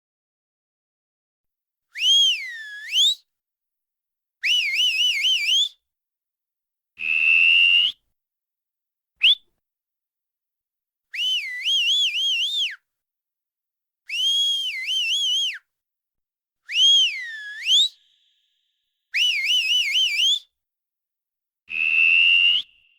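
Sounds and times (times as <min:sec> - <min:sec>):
person whistling: 0:02.0 - 0:03.2, 0:09.2 - 0:09.4, 0:11.1 - 0:12.8, 0:14.1 - 0:15.6, 0:16.7 - 0:18.4, 0:19.2 - 0:20.5, 0:21.7 - 0:22.9.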